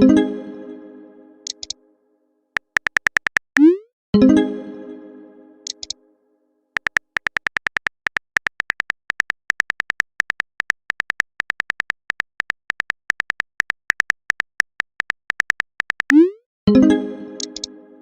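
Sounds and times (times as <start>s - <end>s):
phone keyboard typing clicks: 1.5s - 1.8s, 2.6s - 3.7s, 5.7s - 6.0s, 6.8s - 16.2s, 17.4s - 17.7s.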